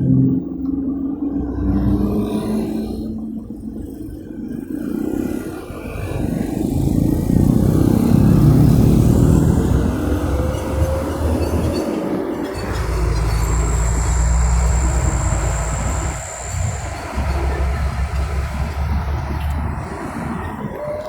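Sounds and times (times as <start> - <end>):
road traffic: 0.0 - 21.0
vehicle passing close: 6.1 - 20.8.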